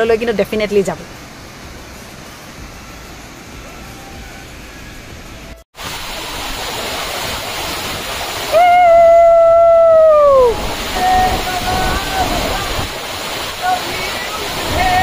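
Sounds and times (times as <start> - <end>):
waterfall rushing: 0.0 - 15.0
rushing noise with low rumble: 0.3 - 15.0
loud long held tone: 3.0 - 7.2, 8.2 - 15.0.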